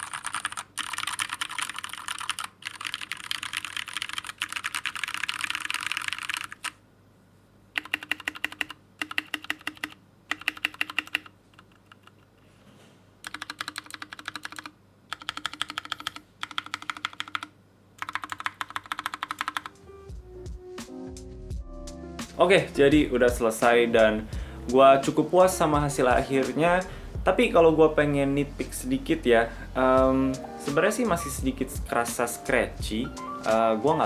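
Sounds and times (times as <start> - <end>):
mechanical keyboard typing: 0.0 - 6.8, 7.8 - 12.2, 13.2 - 19.8.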